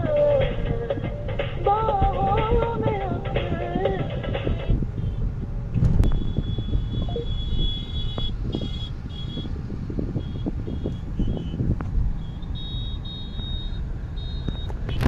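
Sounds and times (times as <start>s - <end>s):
road traffic rumble: 0.0s - 15.0s
short high-pitched beeps: 6.0s - 9.4s, 12.4s - 14.8s.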